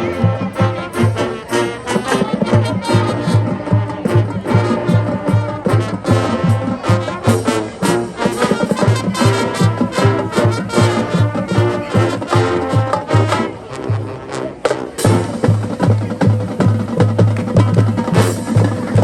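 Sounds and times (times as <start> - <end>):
brass chords: 0.0 - 19.0.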